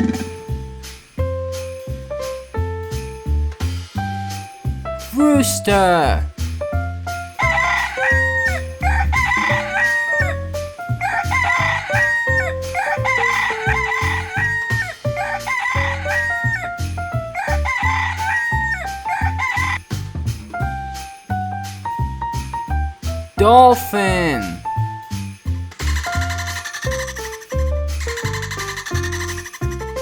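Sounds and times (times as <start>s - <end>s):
rooster crowing: 11.0s - 16.5s.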